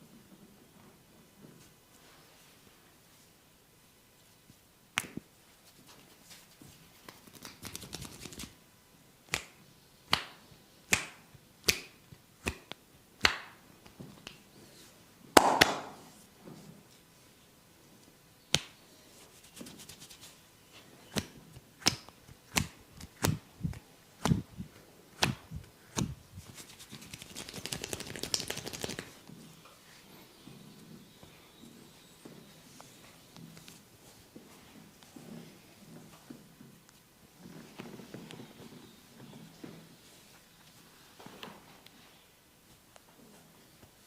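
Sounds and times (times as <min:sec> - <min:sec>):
hair rubbed between fingers crackling: 0:05.0 - 0:08.6, 0:19.1 - 0:20.4, 0:21.9 - 0:29.2
hand smacks on head: 0:15.4 - 0:16.1.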